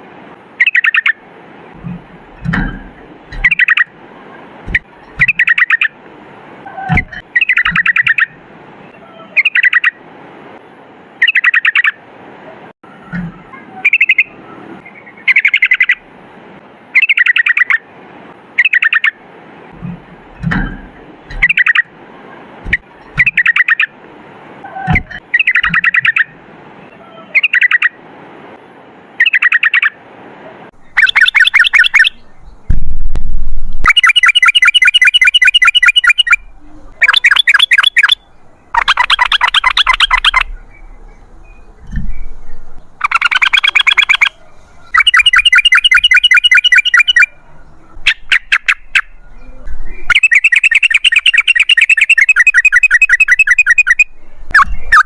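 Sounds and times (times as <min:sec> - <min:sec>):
bird singing rattling chatter: 0:02.1 - 0:06.0, 0:06.8 - 0:10.0, 0:30.8 - 0:32.8, 0:33.6 - 0:55.0.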